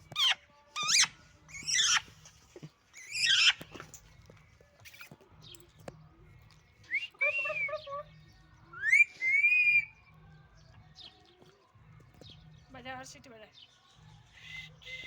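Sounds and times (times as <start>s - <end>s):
parrot whistling: 0.2s - 2.0s, 3.0s - 3.6s, 8.8s - 9.9s.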